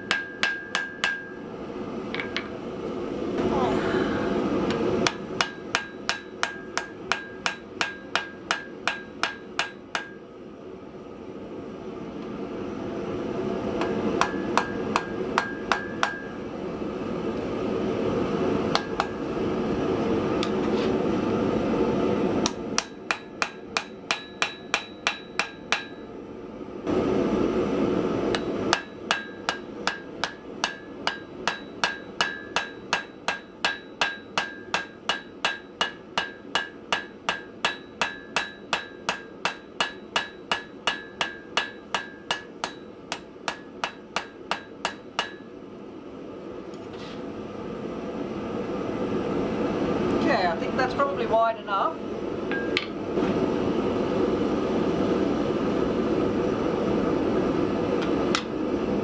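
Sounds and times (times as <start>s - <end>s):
hammer striking steel on anvil: 0.0s - 1.5s, 4.1s - 10.3s, 13.8s - 16.4s, 18.7s - 19.3s, 22.4s - 26.1s, 28.3s - 45.5s, 52.5s - 53.0s, 58.0s - 58.6s
forge roaring: 3.3s - 5.1s.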